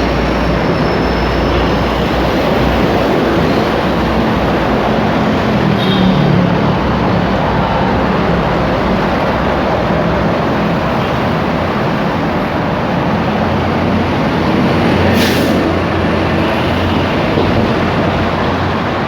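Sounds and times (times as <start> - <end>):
rumble of passing vehicles: 0.0 - 19.0.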